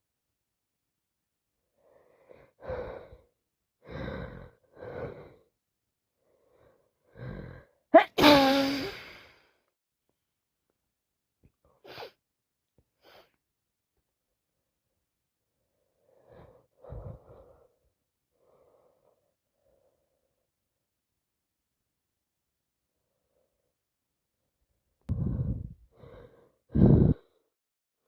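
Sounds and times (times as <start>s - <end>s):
woman sneezing: 8.0s - 9.0s.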